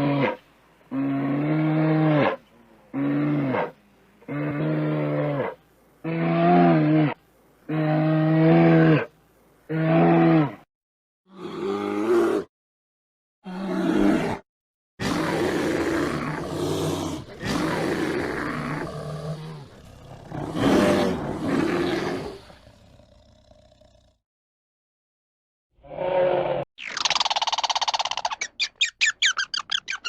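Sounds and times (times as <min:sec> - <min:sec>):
large animal roaring: 0:11.3 - 0:12.5, 0:13.4 - 0:14.4, 0:15.0 - 0:24.2, 0:25.8 - 0:26.7.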